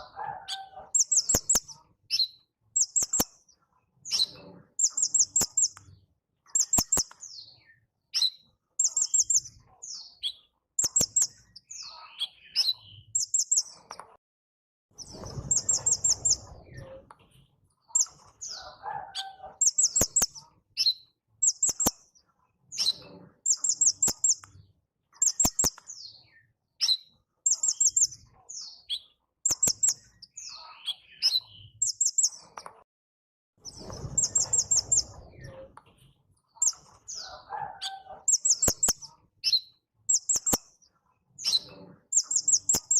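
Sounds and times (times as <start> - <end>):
sharp clicks: 6.6 - 7.2.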